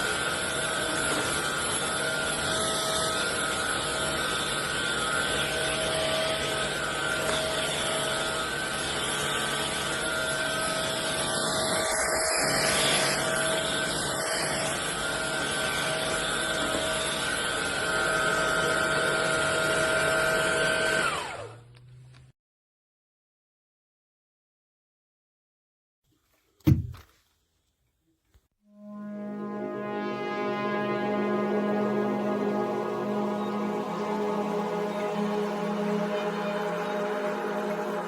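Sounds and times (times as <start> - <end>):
cordless vacuum running: 0.0 - 22.2
vacuum switched off: 0.0 - 22.3.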